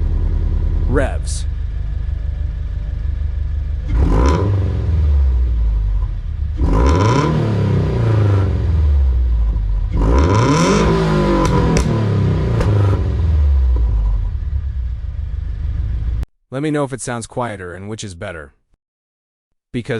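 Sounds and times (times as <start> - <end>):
car engine revving: 0.0 - 16.2
exhaust cracks: 0.0 - 16.2.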